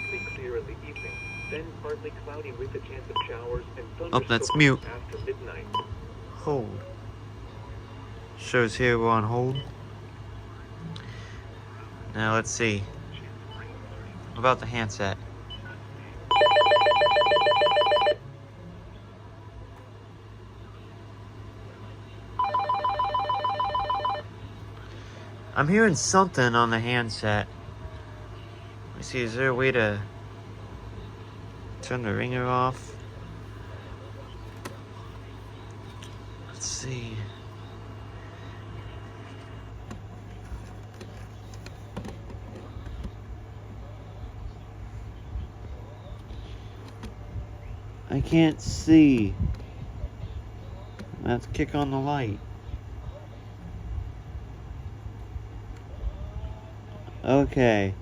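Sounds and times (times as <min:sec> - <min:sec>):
steady low hum: 0:00.0 - 0:58.0
cordless phone ringer warbling: 0:16.3 - 0:18.2, 0:22.4 - 0:24.2.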